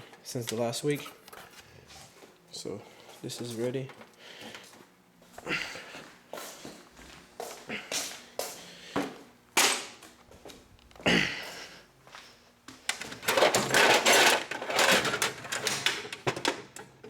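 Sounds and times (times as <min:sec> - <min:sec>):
rapid clattering and rustling: 0:12.8 - 0:17.0.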